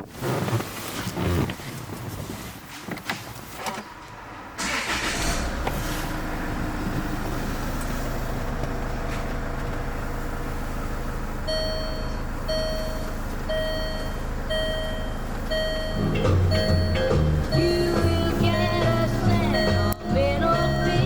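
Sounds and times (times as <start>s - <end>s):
car engine idling: 4.3s - 21.0s
repeating electronic beep: 11.5s - 17.8s.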